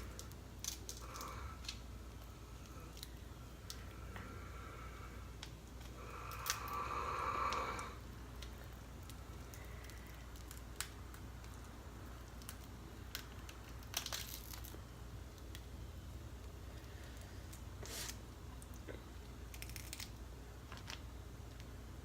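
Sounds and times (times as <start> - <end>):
crab shells cracking: 0.0 - 4.5, 5.3 - 15.7, 18.6 - 21.7.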